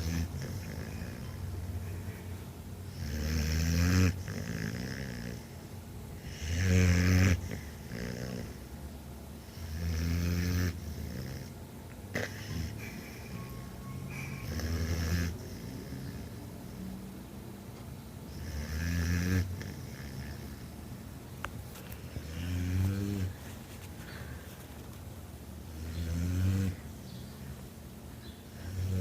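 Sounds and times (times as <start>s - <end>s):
dog snoring: 0.0s - 1.5s, 2.9s - 5.6s, 6.2s - 8.7s, 9.4s - 16.9s, 18.3s - 20.9s, 22.0s - 23.5s, 25.6s - 26.9s, 28.5s - 29.0s.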